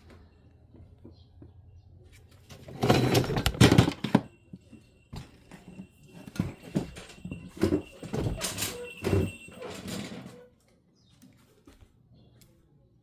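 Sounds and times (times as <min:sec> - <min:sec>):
small bell tinkling: 0:04.3 - 0:10.5.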